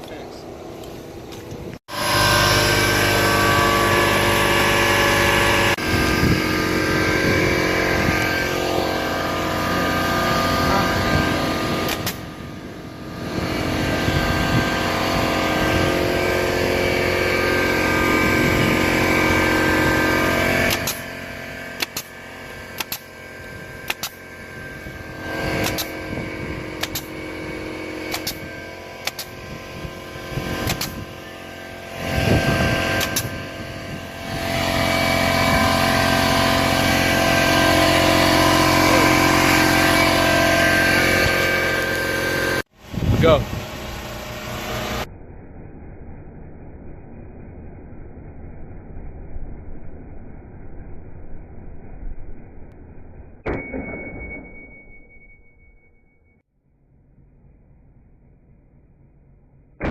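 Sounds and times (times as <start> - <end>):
motor running loudly: 0.0 - 45.1.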